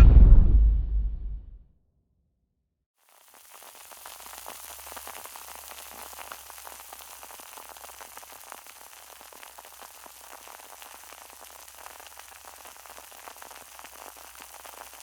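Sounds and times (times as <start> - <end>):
champagne fizzing: 3.0 - 15.0.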